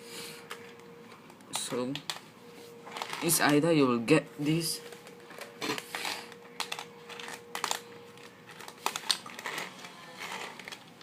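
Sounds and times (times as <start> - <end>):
puzzle cube plastic clicks: 5.4 - 11.0.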